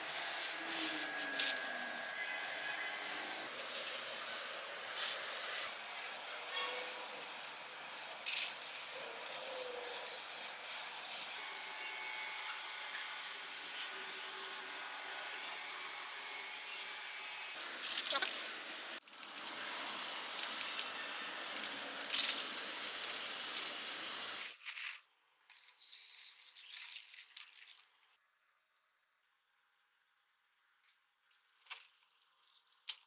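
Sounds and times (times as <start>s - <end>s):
hand sanding rubbing strokes: 0.0s - 17.6s.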